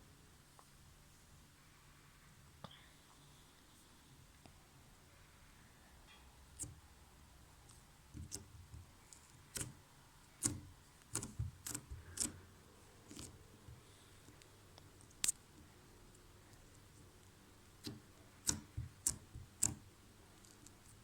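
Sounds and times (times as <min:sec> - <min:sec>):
slime sticky clicks and pops: 0:17.8 - 0:19.8.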